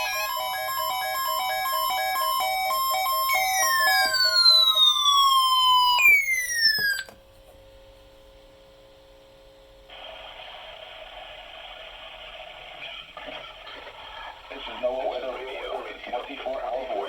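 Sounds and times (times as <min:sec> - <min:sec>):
falling electronic pitch glide: 0:00.0 - 0:07.1
melody of beeps: 0:00.0 - 0:07.1.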